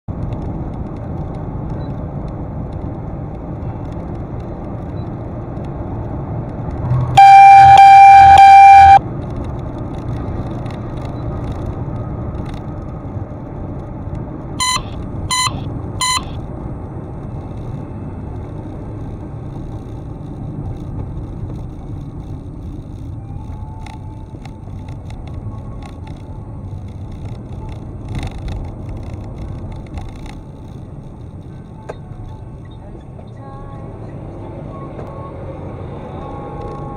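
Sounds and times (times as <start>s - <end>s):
road and engine noise: 0.0s - 36.9s
short horn toots: 7.0s - 9.0s, 14.6s - 16.4s
car horn blast: 7.2s - 9.0s, 14.6s - 16.4s.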